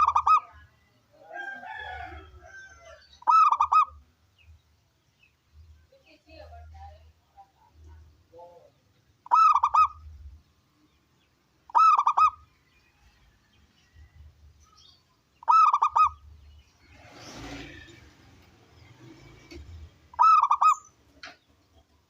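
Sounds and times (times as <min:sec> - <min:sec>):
dove cooing: 0:00.0 - 0:00.6, 0:03.2 - 0:04.0, 0:09.2 - 0:10.0, 0:11.7 - 0:12.4, 0:15.4 - 0:16.2, 0:20.1 - 0:20.9.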